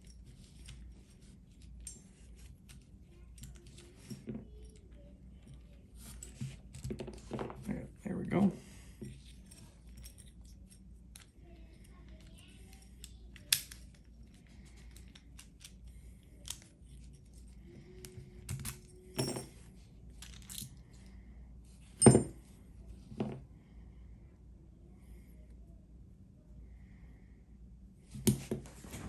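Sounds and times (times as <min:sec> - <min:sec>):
metal lock parts clicking: 0:12.1 - 0:17.2.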